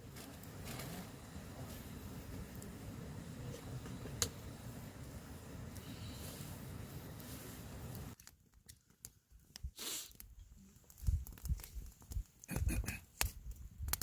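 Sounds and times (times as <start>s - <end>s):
steady hiss: 0.0s - 8.2s, 9.6s - 10.2s
campfire wood crackling: 0.0s - 14.0s.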